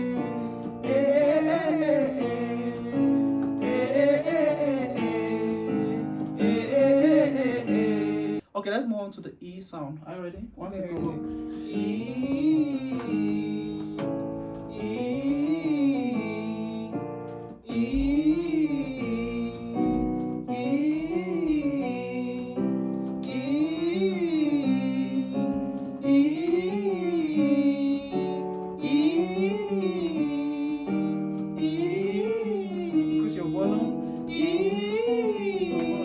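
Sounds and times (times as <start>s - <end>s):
piano chords: 0.0s - 8.4s, 10.4s - 36.0s
person singing a warm-up scale: 11.0s - 14.0s, 14.6s - 36.0s.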